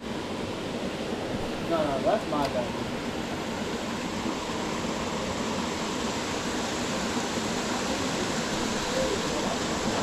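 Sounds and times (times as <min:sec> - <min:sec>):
mountain stream rushing: 0:00.0 - 0:10.0.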